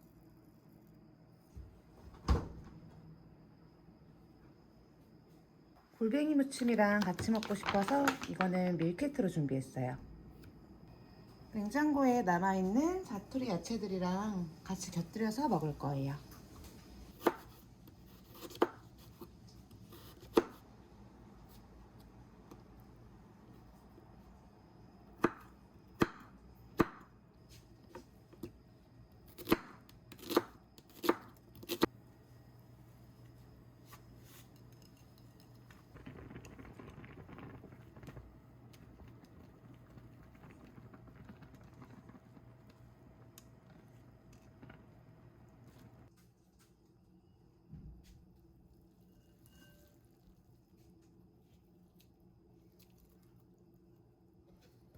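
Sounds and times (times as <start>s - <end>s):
knife chopping on cutting board: 17.2s - 17.6s, 18.2s - 19.2s.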